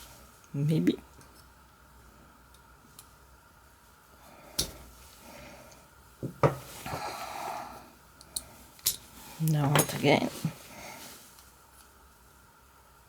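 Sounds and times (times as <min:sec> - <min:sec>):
person breathing out: 0:06.8 - 0:07.9.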